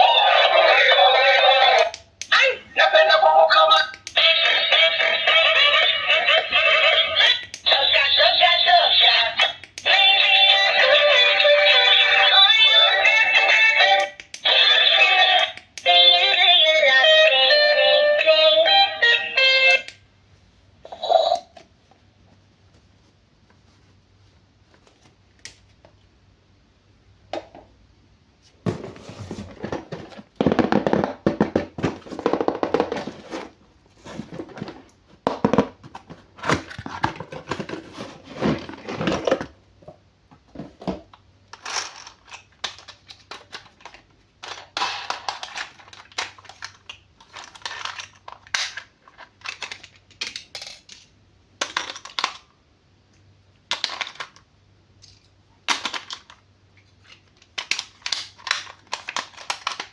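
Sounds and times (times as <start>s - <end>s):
toy packaging rustling and crinkling: 0.0s - 15.6s, 28.6s - 39.6s, 40.4s - 51.0s, 53.7s - 54.5s, 55.1s - 59.9s.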